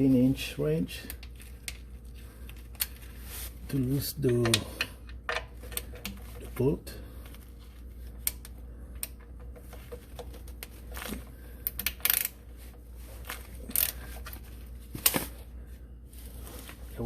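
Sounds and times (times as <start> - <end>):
wrench clicking on metal: 11.6 - 12.3.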